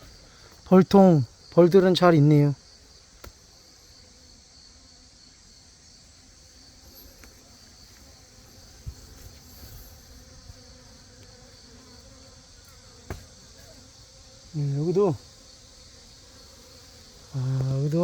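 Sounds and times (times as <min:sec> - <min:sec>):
high-pitched insect trill: 0:00.0 - 0:18.0
bees buzzing: 0:01.3 - 0:18.0
soft thump: 0:13.1 - 0:13.3.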